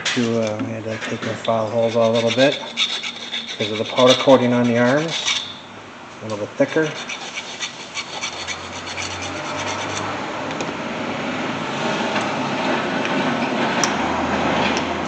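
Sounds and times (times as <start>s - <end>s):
hand file rasping on metal: 0.0s - 5.6s, 6.7s - 10.1s.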